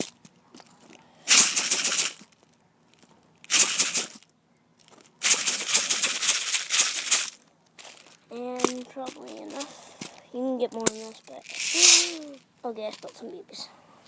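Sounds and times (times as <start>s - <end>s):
plastic pellets rattling in bottle: 1.3s - 9.8s, 10.7s - 13.4s.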